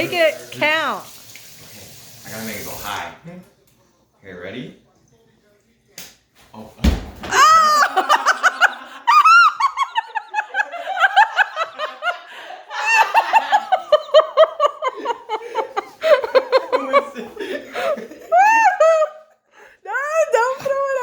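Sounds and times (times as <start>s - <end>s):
people laughing: 7.3s - 19.3s.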